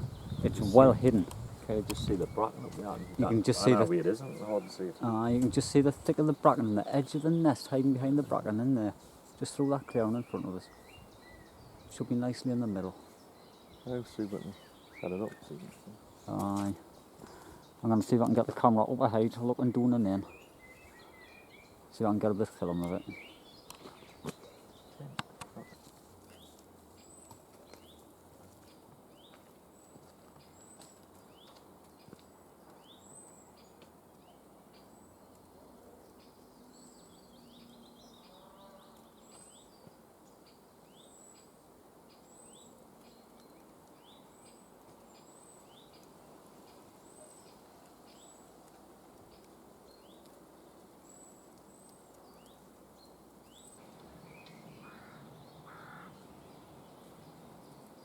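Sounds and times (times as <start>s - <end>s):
outdoor background noise: 0.0s - 58.0s
bird chirps: 9.4s - 18.5s, 28.7s - 48.5s, 51.0s - 58.0s.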